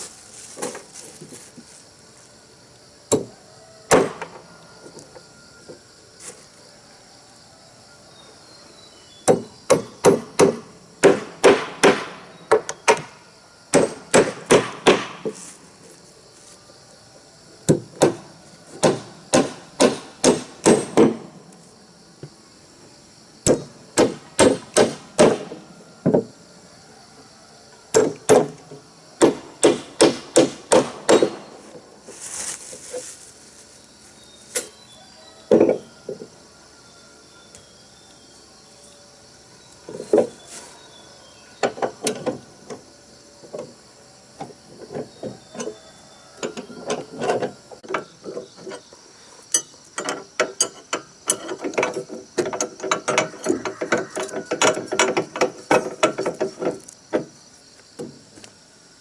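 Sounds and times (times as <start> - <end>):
hammering on wood: 3.9 - 4.4, 9.2 - 13.1, 13.7 - 15.4, 17.7 - 21.3, 23.4 - 26.3, 27.9 - 31.4.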